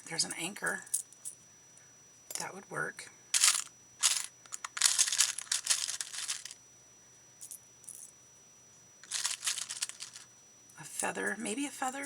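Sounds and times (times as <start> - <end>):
small metal charms clinking: 3.4 - 6.6, 9.0 - 10.2.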